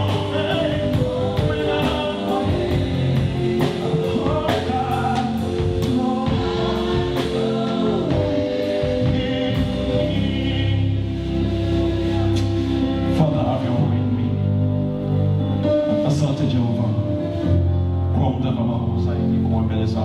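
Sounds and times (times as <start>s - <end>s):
steady drum beat: 0.0s - 11.4s
voices singing: 0.0s - 12.7s
instrumental backing: 0.0s - 20.0s.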